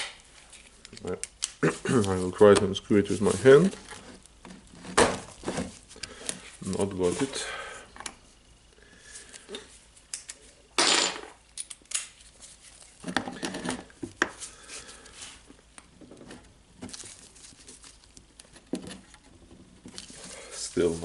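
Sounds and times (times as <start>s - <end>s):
tools clicking and tapping: 11.5s - 12.1s.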